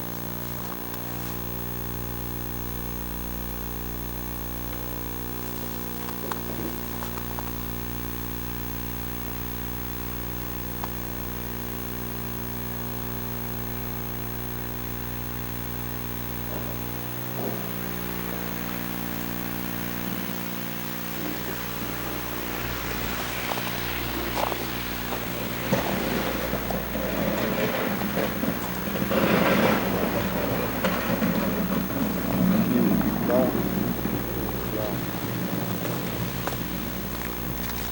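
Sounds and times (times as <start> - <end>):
electrical buzz: 0.0 - 37.9
hiss: 16.2 - 37.9.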